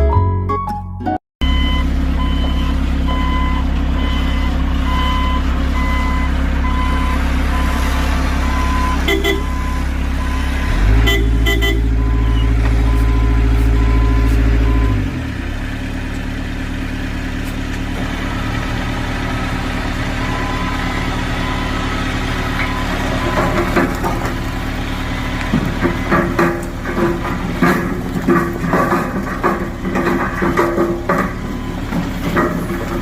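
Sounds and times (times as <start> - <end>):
excavator diesel engine running: 1.4 - 33.0.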